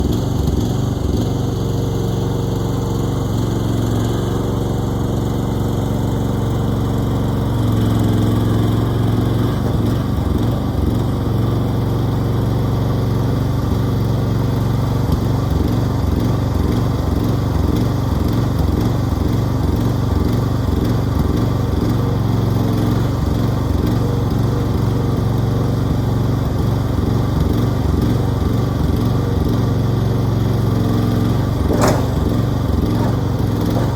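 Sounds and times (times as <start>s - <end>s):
engine humming: 0.0s - 11.7s, 22.7s - 33.9s.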